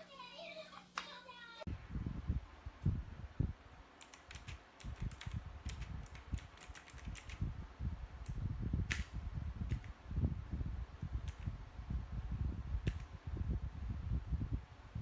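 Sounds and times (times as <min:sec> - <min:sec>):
mechanical keyboard typing clicks: 0:04.0 - 0:07.4.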